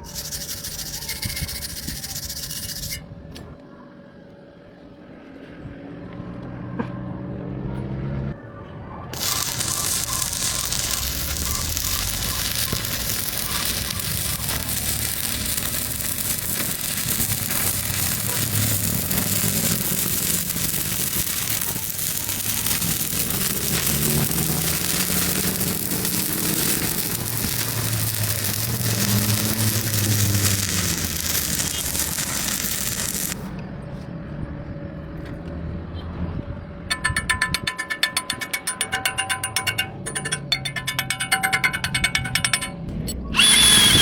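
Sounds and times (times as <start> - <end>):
welding arc crackling and hissing: 0.0 - 2.9, 9.2 - 33.5.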